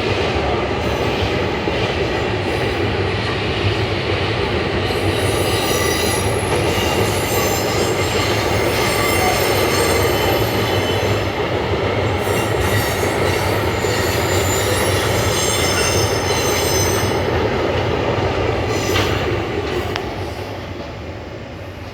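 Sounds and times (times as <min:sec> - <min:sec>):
train wheels squealing: 0:04.8 - 0:17.6, 0:18.6 - 0:20.6.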